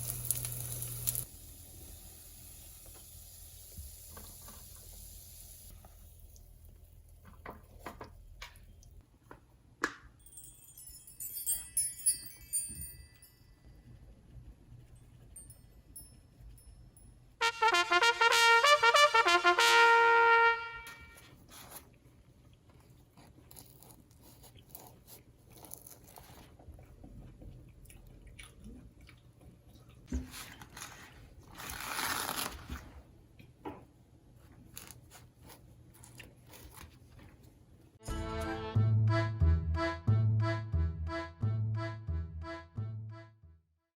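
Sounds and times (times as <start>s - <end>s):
brassy musical sound effect: 17.4s - 21.2s, 38.0s - 43.5s
crunching and chewing food: 21.3s - 33.6s, 34.4s - 37.7s.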